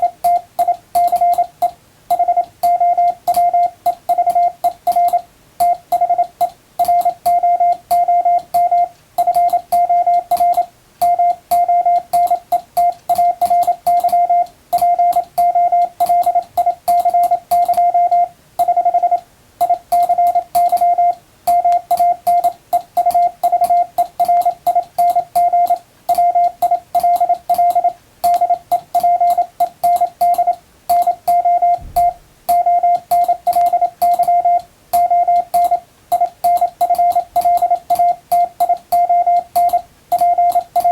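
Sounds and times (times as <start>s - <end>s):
morse code beeps: 0.0s - 40.9s.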